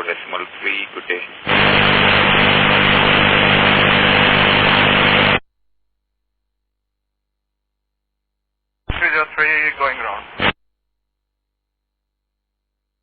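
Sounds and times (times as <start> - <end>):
radio static hiss: 0.0 - 5.4, 8.9 - 10.6
low hum: 1.5 - 5.4.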